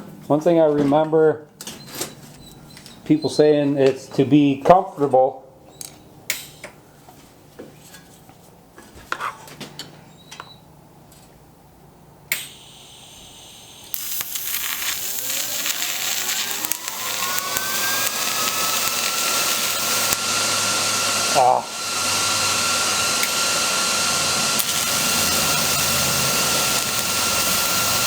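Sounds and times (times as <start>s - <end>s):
welding arc sizzling crackle: 12.3s - 28.0s
faint rising whine: 12.6s - 28.0s.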